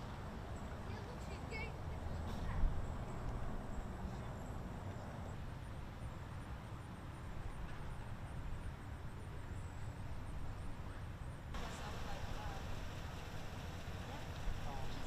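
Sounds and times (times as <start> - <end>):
low outdoor rumble: 7.4 - 15.0.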